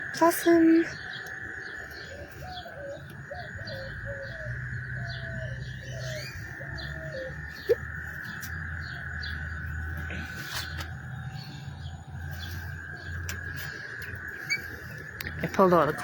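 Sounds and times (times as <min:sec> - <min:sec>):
frogs high trill: 0:00.0 - 0:09.9.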